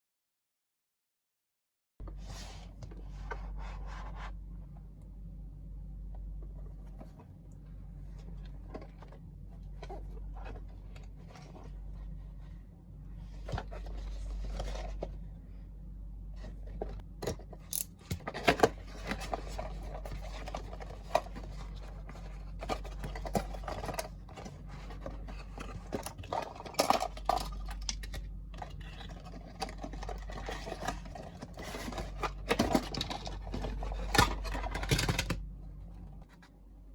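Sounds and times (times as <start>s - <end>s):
steady low hum: 2.0s - 36.9s
packaging rustling and scraping: 8.0s - 15.4s, 16.4s - 36.6s.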